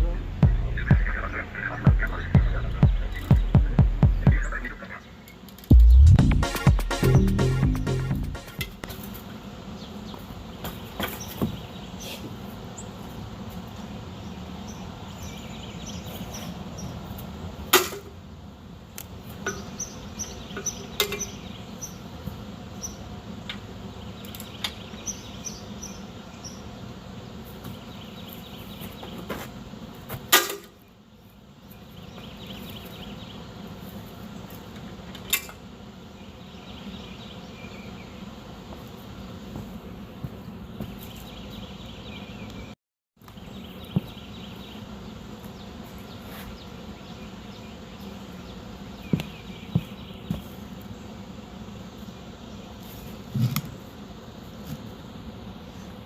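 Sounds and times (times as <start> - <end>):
low steady hum: 0.0 - 8.9.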